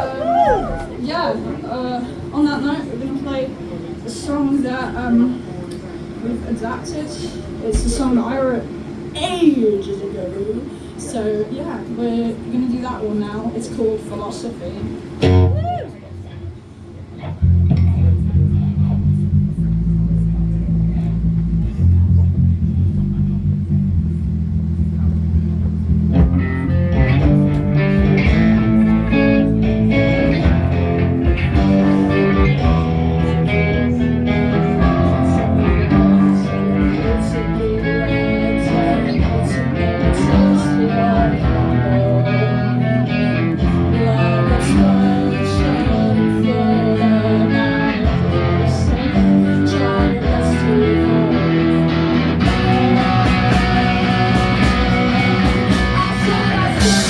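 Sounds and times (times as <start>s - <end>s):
low held bass: 0.0s - 1.2s, 15.2s - 16.0s, 17.2s - 57.0s
live band playing: 26.1s - 46.3s, 47.5s - 57.0s.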